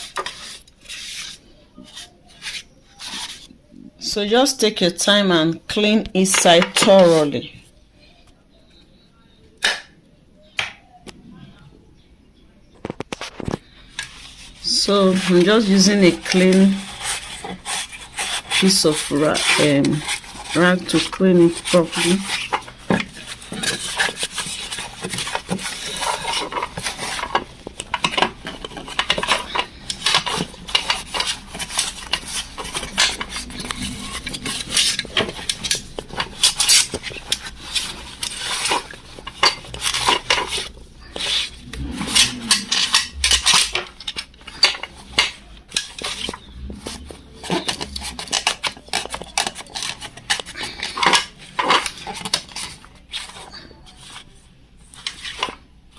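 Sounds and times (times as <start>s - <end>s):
metallic clinks and scrapes: 13.8s - 55.6s
rag rubbing and wiping: 14.1s - 54.4s.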